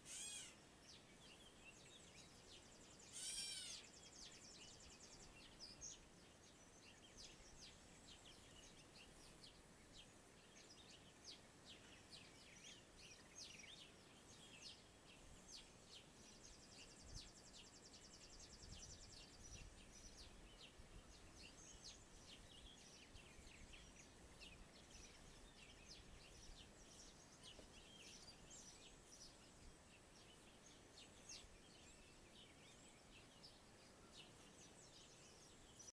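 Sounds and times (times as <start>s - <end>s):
bird trill: 0.0s - 0.6s, 3.1s - 4.0s
birds chirping: 0.0s - 35.9s
steady background hiss: 0.0s - 35.9s.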